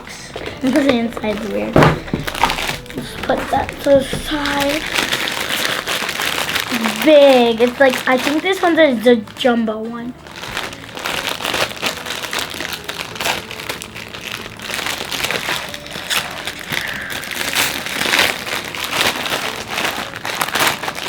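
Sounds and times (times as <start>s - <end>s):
packaging crinkling and tearing: 0.0s - 21.0s.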